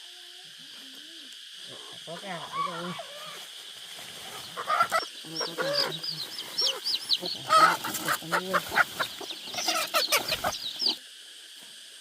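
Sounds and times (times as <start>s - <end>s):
chickens clucking: 2.2s - 11.0s
chicks peeping: 4.2s - 11.0s.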